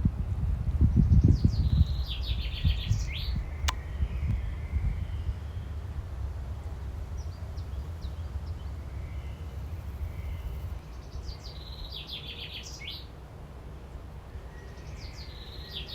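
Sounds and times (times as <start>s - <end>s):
steady low rumble: 0.0s - 11.8s
small birds chirping: 0.8s - 5.8s.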